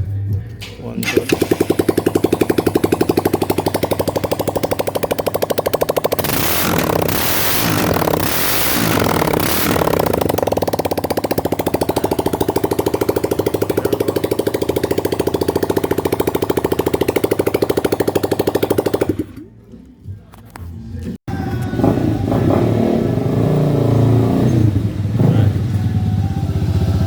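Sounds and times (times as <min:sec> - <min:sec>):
motorcycle engine revving and running: 0:01.0 - 0:19.7, 0:21.3 - 0:27.0.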